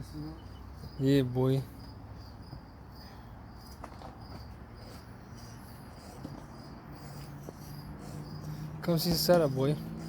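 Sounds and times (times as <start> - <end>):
crickets chirping: 0.0 - 10.0.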